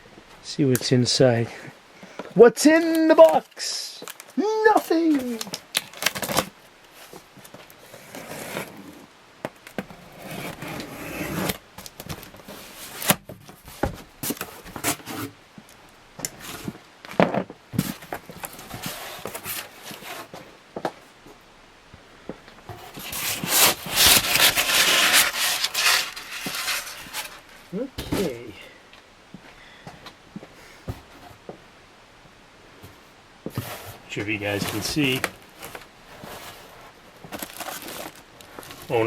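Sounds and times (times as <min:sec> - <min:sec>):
cardboard rustling and scraping: 0:04.1 - 0:09.1, 0:09.7 - 0:15.4, 0:16.3 - 0:20.6, 0:22.7 - 0:28.6, 0:32.8 - 0:39.0.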